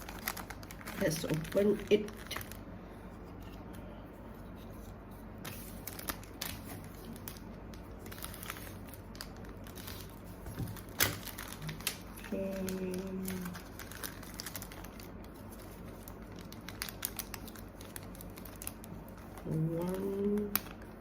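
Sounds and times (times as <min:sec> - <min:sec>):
plastic packaging rustling and tearing: 0:00.0 - 0:03.7, 0:04.7 - 0:21.0.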